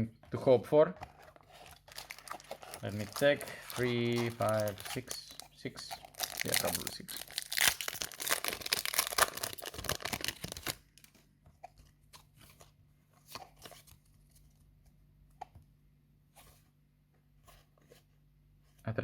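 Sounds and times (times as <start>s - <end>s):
foil wrapper tearing: 1.7s - 11.1s.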